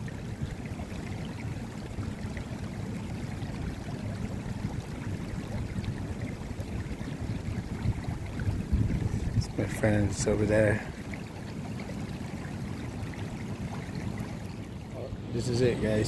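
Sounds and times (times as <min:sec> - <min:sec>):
river water rushing: 0:00.0 - 0:16.0.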